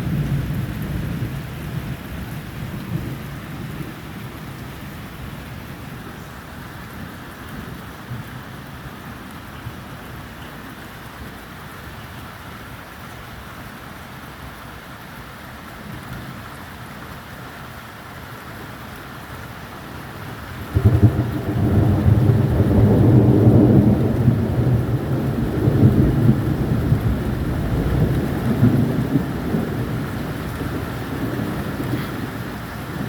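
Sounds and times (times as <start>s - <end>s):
steady rain: 0.0s - 33.0s
thunderclap and rolling thunder: 20.6s - 33.0s.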